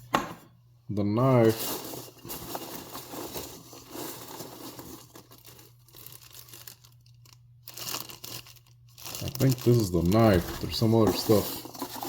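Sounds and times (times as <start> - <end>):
packaging crinkling and rustling: 1.4 - 12.0.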